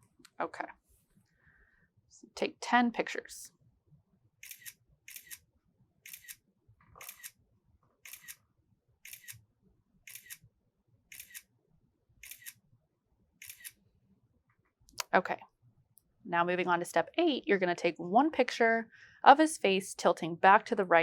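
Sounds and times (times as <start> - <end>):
camera shutter double clicks: 7.0 - 7.3, 9.1 - 9.4.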